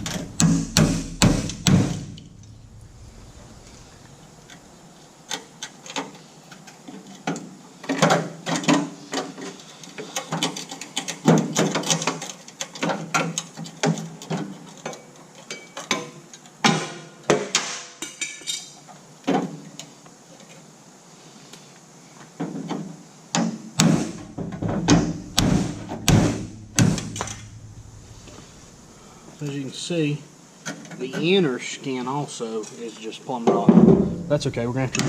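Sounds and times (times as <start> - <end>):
sheet metal knocks and scrapes: 0.0 - 4.7, 23.8 - 29.0, 33.7 - 35.0.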